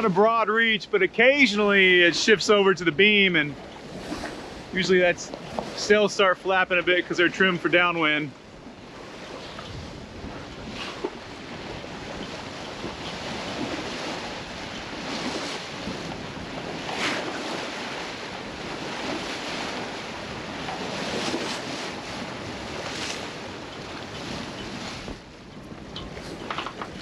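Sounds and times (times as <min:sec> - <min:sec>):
waves rushing along a hull: 0:00.0 - 0:27.0
wind buffeting: 0:08.4 - 0:27.0.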